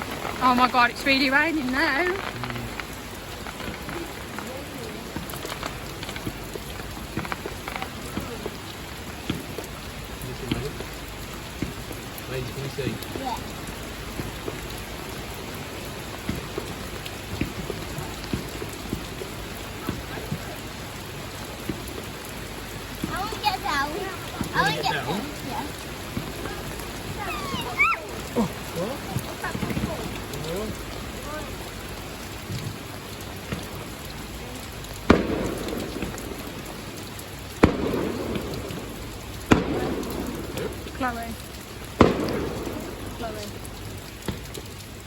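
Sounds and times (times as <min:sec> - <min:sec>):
firework bangs: 0:00.0 - 0:12.0, 0:14.0 - 0:34.0, 0:35.0 - 0:43.6
heavy raindrops tapping: 0:00.0 - 0:45.0
rain falling steadily: 0:00.0 - 0:45.0
rumbling echo: 0:35.0 - 0:43.8.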